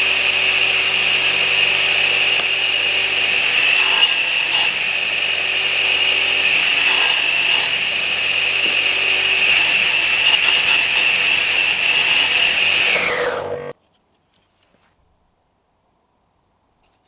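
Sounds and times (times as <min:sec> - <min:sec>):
power tool whining against wood: 0:00.0 - 0:13.7
power tool winding down: 0:00.0 - 0:13.7.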